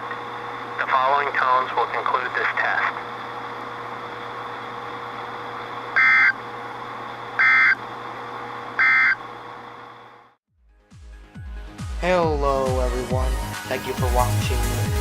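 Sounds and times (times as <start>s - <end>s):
radio hiss: 0.8s - 3.1s
warbling data bursts: 6.0s - 6.4s, 7.4s - 7.8s.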